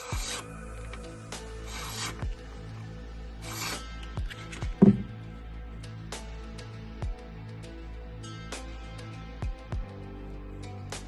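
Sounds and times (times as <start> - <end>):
electronic music with deep bass: 0.0 - 11.0.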